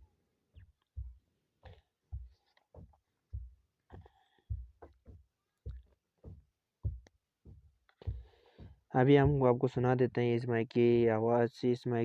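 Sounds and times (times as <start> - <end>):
microphone handling thumps and clicks: 0.6 - 9.5.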